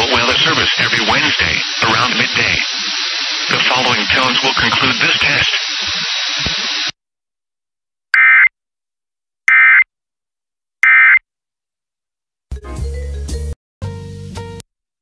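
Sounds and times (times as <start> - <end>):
hissy weather radio audio: 0.0 - 6.9
program audio: 0.0 - 6.9.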